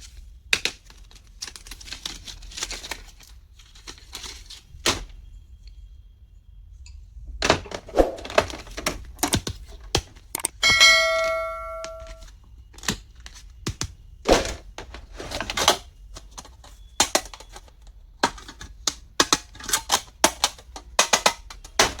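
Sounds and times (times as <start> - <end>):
plastic items clicking and tapping: 0.0 - 5.1, 7.4 - 22.0
ringing tone: 10.6 - 12.2.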